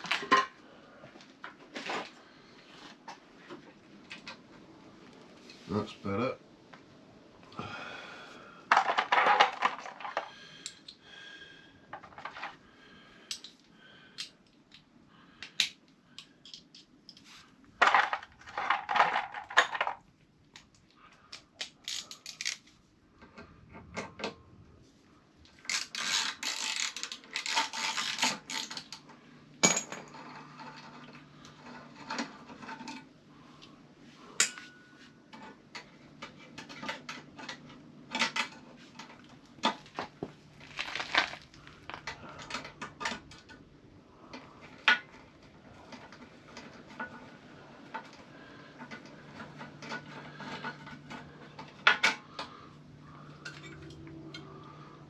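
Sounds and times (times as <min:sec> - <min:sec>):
metal tools clinking and clattering: 0:29.6 - 0:33.0, 0:53.4 - 0:54.4.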